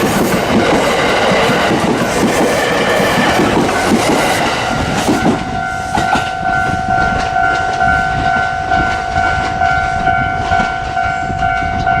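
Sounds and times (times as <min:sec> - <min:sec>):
train rumbling on rails: 0:00.0 - 0:12.0
level crossing warning bell: 0:03.6 - 0:12.0.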